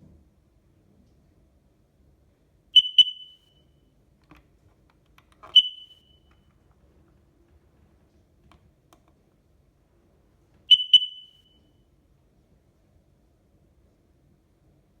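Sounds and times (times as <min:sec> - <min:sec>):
smoke alarm chirps: 0:02.8 - 0:03.8, 0:05.5 - 0:06.5, 0:10.7 - 0:11.8.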